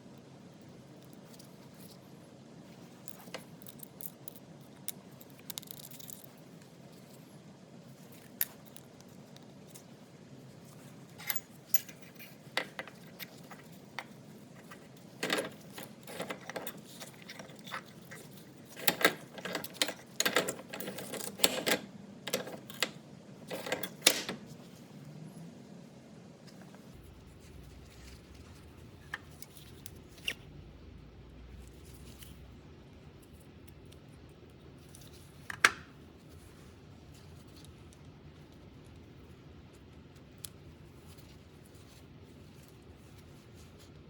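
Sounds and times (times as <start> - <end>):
small metal parts clicking: 3.0 - 6.4, 15.2 - 24.4.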